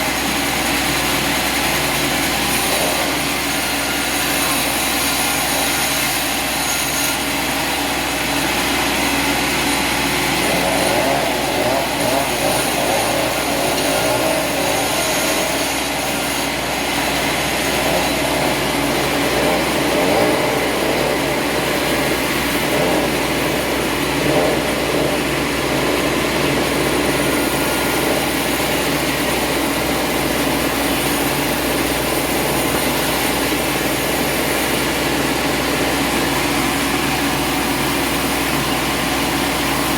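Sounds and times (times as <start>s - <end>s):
steady mechanical engine noise: 0.0s - 39.9s.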